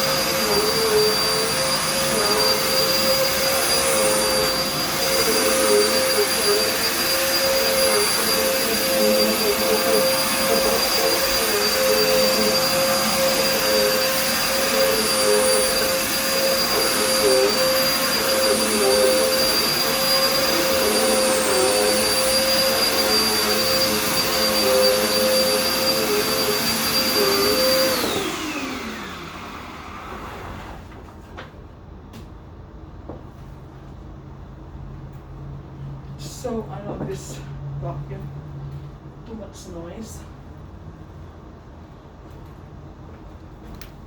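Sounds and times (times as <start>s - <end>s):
vacuum cleaner running: 0.0s - 31.0s.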